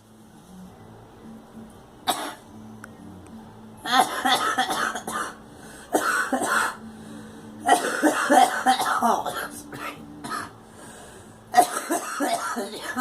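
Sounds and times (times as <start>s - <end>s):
girl coughing: 3.9s - 5.4s, 6.0s - 6.8s, 7.7s - 10.5s, 11.6s - 13.0s.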